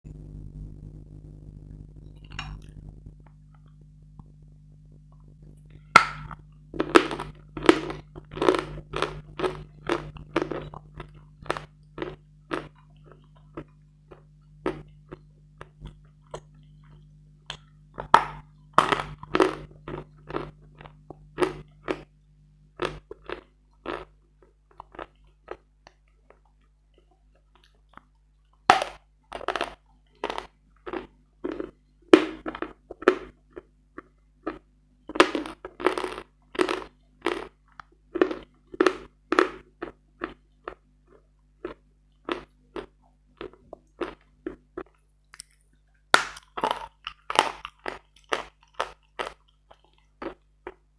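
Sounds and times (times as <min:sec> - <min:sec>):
chalk being crunched and chewed: 0:06.0 - 0:16.5, 0:17.5 - 0:22.1, 0:41.6 - 0:45.6, 0:46.2 - 0:50.8.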